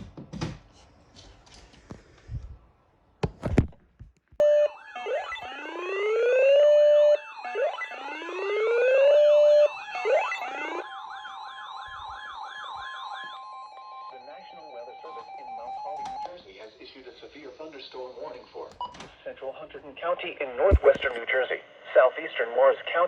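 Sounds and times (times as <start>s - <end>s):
yelping siren: 4.4s - 18.4s
wailing emergency sirens: 4.4s - 18.5s
steady siren tone: 4.4s - 18.6s.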